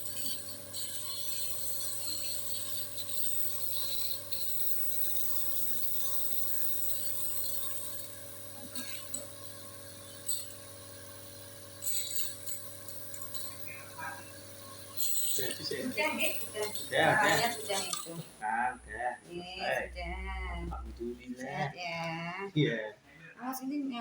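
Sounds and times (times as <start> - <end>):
nebulizer compressor humming: 0.0 - 23.4.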